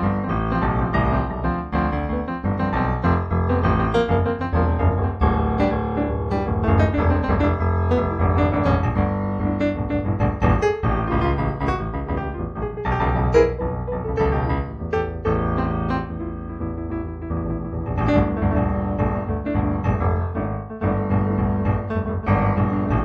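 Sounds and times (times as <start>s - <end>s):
piano music: 0.0s - 23.0s.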